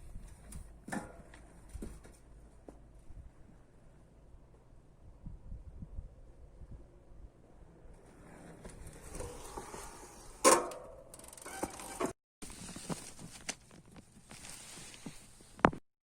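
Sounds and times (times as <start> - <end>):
bicycle brakes squealing: 11.1 - 12.1.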